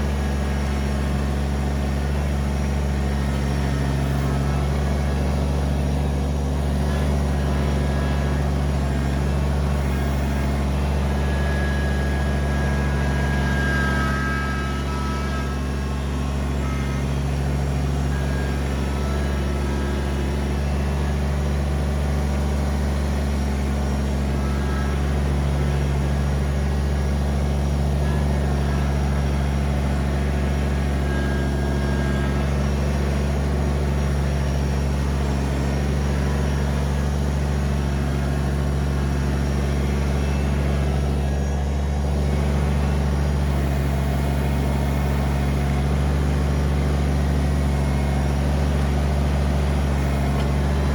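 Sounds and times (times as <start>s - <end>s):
tractor diesel engine running: 0.0s - 50.9s.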